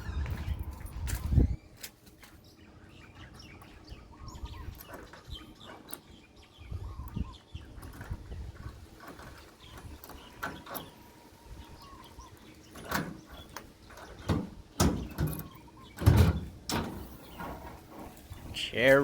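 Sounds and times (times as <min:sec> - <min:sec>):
knocks and clunks: 0:12.7 - 0:18.5.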